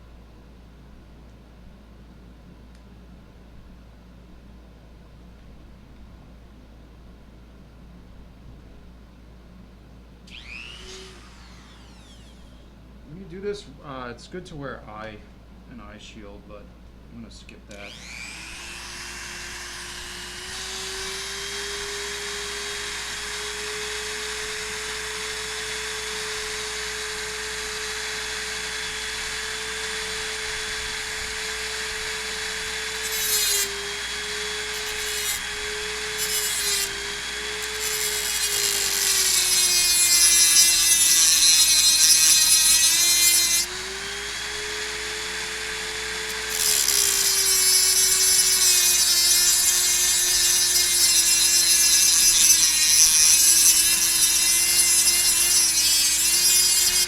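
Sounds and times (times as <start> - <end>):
rotary tool whining: 10.3 - 12.8, 17.7 - 57.0
cutting wheel grinding metal bolts: 17.7 - 57.0.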